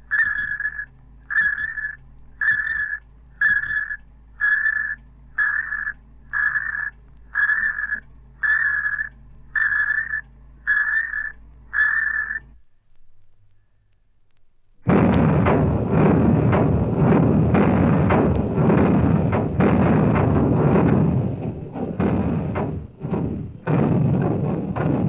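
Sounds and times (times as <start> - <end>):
low machinery hum: 0.0 - 25.0
pulsing alarm tone: 0.1 - 12.5.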